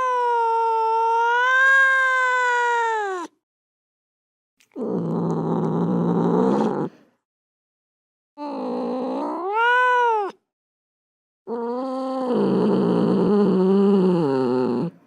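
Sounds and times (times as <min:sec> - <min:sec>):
cat meowing and yowling: 0:00.0 - 0:03.4, 0:08.4 - 0:10.4.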